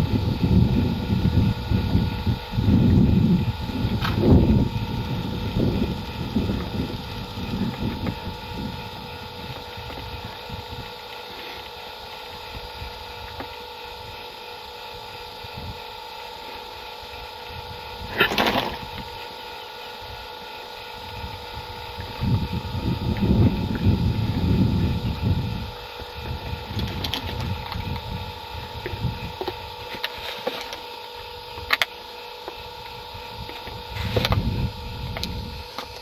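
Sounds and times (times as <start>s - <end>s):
wind rumbling on microphone: 0.0s - 10.9s, 21.0s - 29.8s, 32.8s - 35.6s
faint steady hum: 0.0s - 36.0s.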